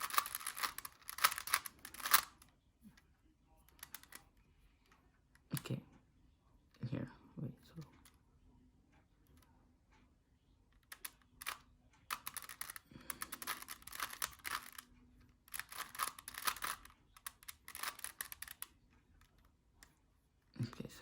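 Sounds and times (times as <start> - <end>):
puzzle cube clicking and rattling: 0.0 - 2.4, 3.7 - 4.3, 10.8 - 18.7.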